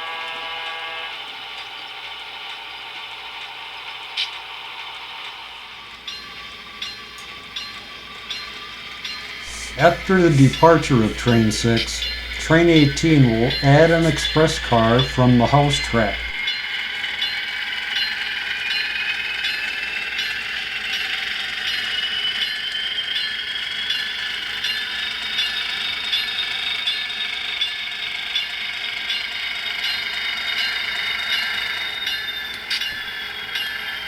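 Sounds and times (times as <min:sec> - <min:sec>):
model train motor whine: 0:00.0 - 0:34.0
wheels clicking on track: 0:01.2 - 0:16.4.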